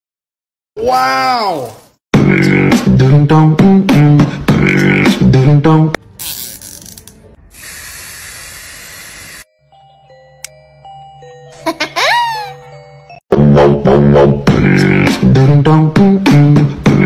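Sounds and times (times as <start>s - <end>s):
music with beatboxed beat: 2.1s - 6.6s, 13.4s - 17.0s.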